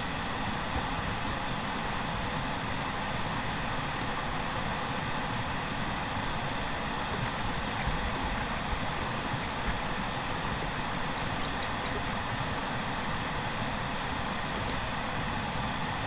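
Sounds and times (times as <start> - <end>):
water rushing over waterfall: 3.7 - 10.7
faint bird chirps: 10.6 - 12.2.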